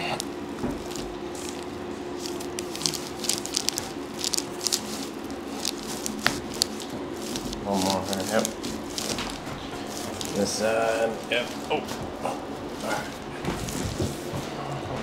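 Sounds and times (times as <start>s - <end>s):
hands rubbing skin and cloth: 0.0s - 14.6s
steady low hum: 0.0s - 15.0s.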